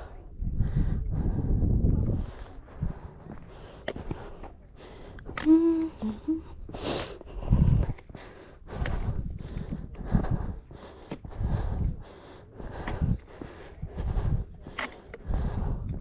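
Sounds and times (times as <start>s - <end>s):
person breathing hard: 0.0s - 16.0s
person humming: 5.4s - 6.7s.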